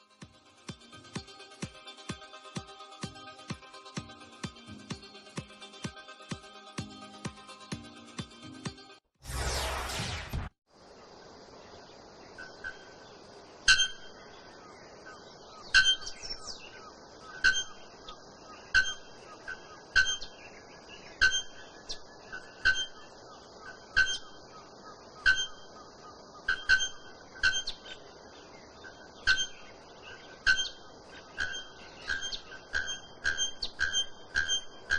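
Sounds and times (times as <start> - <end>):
bellbird metallic ringing call: 13.7 - 14.1, 15.8 - 16.2, 17.4 - 17.8, 18.8 - 20.4, 21.2 - 21.7, 22.3 - 23.0, 23.7 - 24.3, 25.2 - 25.6, 26.5 - 27.8, 28.9 - 29.7, 30.5 - 34.9.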